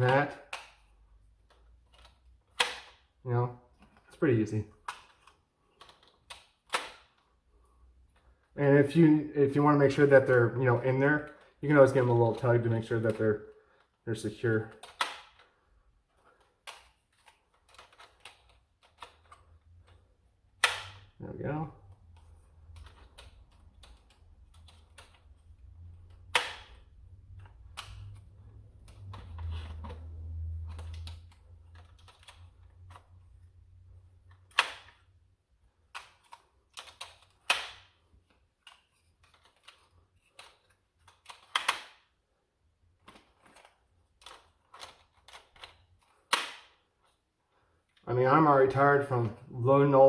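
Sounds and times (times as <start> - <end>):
plastic clicks and rattles: 0.0 - 3.1, 4.8 - 7.4, 14.7 - 21.2, 21.8 - 42.2, 42.9 - 47.2
magazine snapping into place: 46.3 - 46.8.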